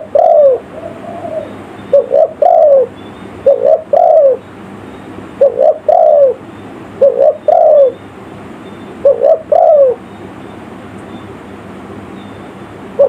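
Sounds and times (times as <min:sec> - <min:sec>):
dove cooing: 0:00.0 - 0:04.4, 0:05.4 - 0:06.4, 0:07.0 - 0:08.0, 0:09.0 - 0:10.0.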